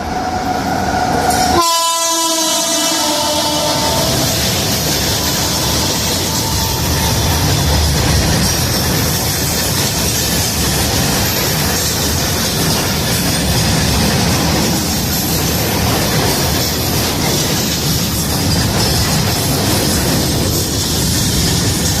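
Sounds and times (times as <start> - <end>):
freight train wagons on rails: 0.0 - 22.0.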